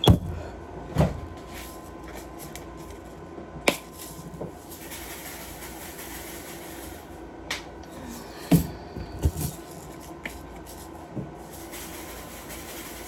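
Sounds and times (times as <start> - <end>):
low steady hum: 0.0 - 4.8
laundry handling noises: 8.0 - 11.4.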